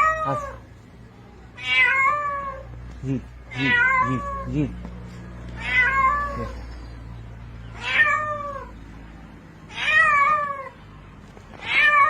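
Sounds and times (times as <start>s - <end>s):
cat meowing in distress: 0.0s - 0.7s, 1.5s - 2.7s, 3.5s - 4.8s, 5.6s - 6.6s, 7.8s - 8.8s, 11.6s - 12.0s.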